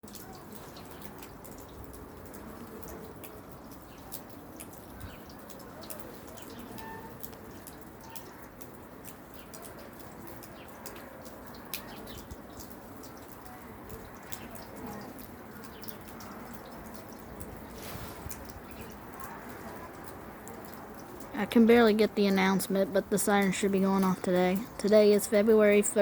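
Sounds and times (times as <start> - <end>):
low background noise: 0.0 - 26.0
sharp ticks and clicks: 18.3 - 26.0.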